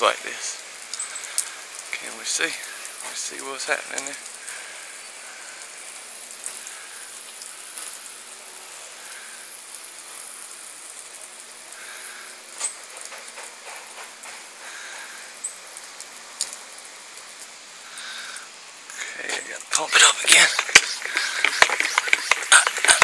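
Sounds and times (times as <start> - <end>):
sprayer hissing: 17.9 - 23.0
sharp ticks: 19.7 - 23.0.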